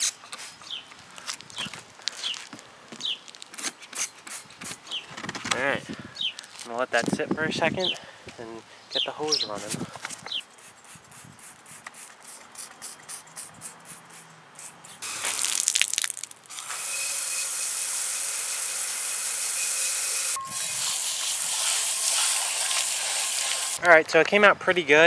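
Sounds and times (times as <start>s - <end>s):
garden hose spraying water: 10.5s - 23.8s.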